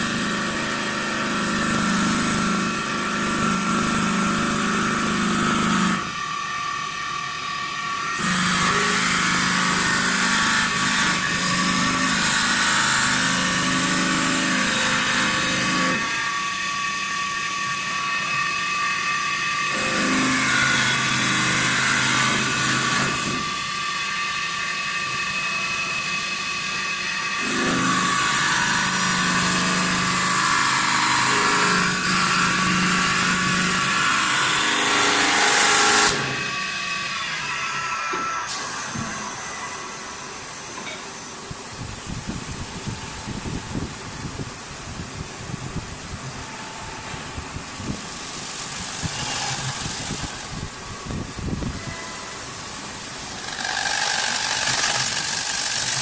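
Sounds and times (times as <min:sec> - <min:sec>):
wood lathe machine whine: 0:00.0 - 0:56.0
hiss of wood being cut: 0:52.4 - 0:56.0.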